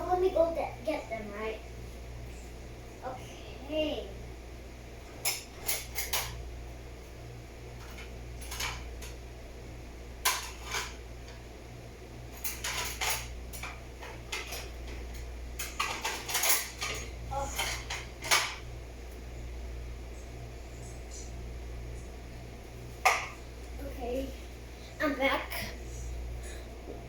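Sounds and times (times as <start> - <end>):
steady low hum: 0.0 - 27.0
dishes clinking and clattering: 5.2 - 6.4, 7.8 - 9.2, 10.2 - 11.0, 12.4 - 18.6.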